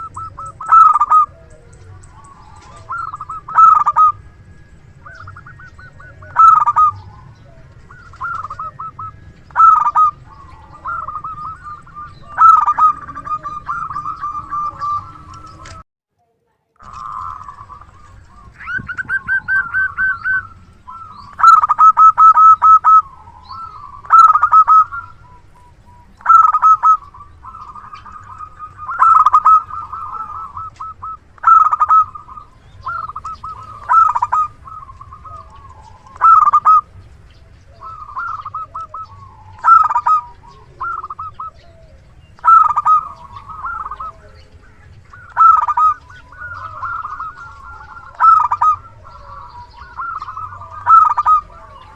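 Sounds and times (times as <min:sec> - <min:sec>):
dove cooing: 0:00.0 - 0:15.8, 0:16.8 - 0:51.9.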